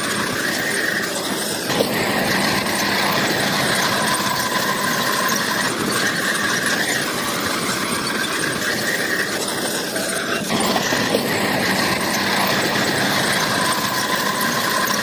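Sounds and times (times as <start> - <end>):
bulldozer engine running: 0.0 - 15.0
high squeal of crawler tracks: 0.0 - 15.0.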